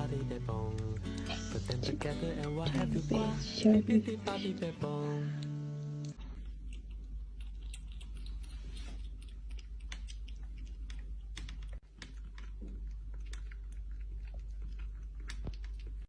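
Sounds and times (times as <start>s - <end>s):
steady low hum: 0.0s - 16.0s
cat mouth clicking while eating: 6.0s - 16.0s.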